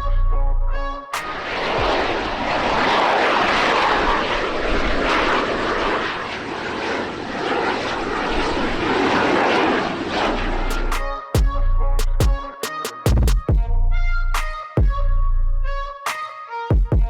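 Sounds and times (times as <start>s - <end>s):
airplane engine drone: 0.7s - 13.1s.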